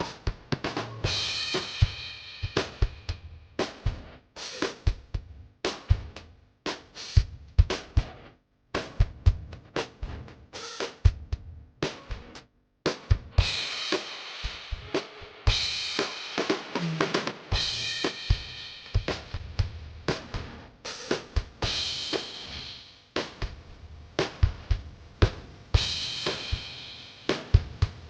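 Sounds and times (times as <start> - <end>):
snare drum: 0.0 - 15.3, 15.9 - 22.6, 27.3 - 28.0
kick drum: 7.2 - 8.2, 8.8 - 10.4, 11.0 - 12.3.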